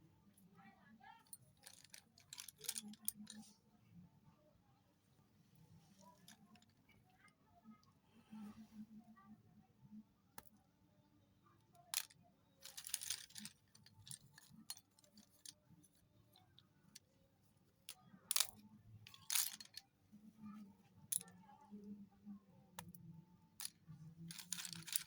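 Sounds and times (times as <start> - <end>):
slate pencils snapping and crunching: 1.6 - 3.4, 12.0 - 15.5, 18.3 - 19.8, 24.3 - 25.0.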